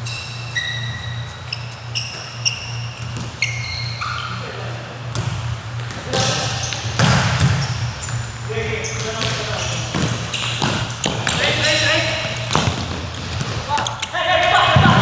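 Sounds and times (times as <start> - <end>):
shoes squeaking on hardwood: 0.0 - 15.0
steady low hum: 0.0 - 15.0
ball bouncing: 5.0 - 15.0.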